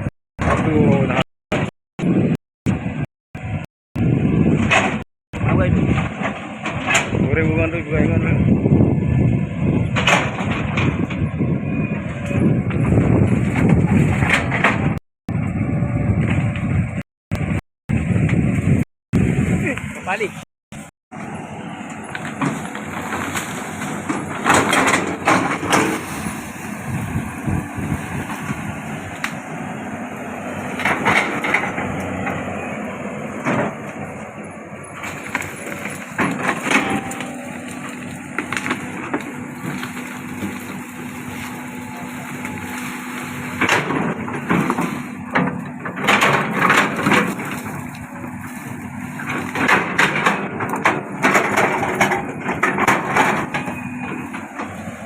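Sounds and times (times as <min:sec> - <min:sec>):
excavator diesel engine: 0:00.0 - 0:55.0
hydraulics whining: 0:00.0 - 0:55.0
wood cracking and splintering: 0:22.0 - 0:26.3, 0:34.9 - 0:54.8.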